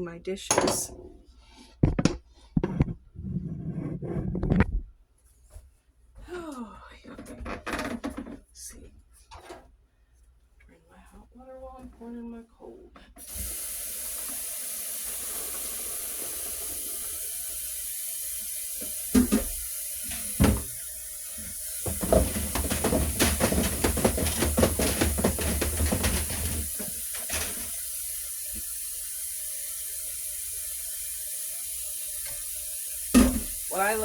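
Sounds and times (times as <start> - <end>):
faucet running into sink: 13.2 - 34.0
splashing and clatter: 21.8 - 27.7.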